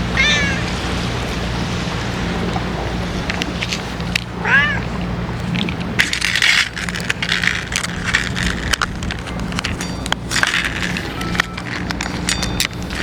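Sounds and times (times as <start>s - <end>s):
wind rumble on microphone: 0.0s - 13.0s
cats crunching dry food: 5.4s - 13.0s.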